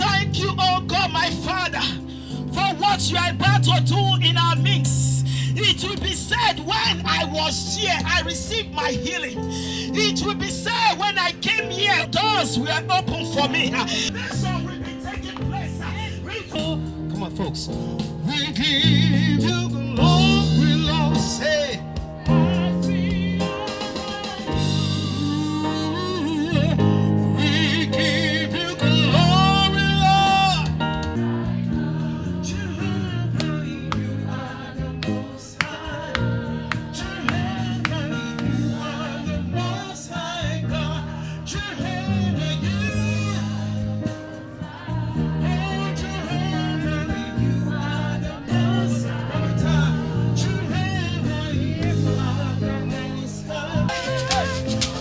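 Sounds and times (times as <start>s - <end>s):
gospel band with bass and guitar: 0.0s - 55.0s.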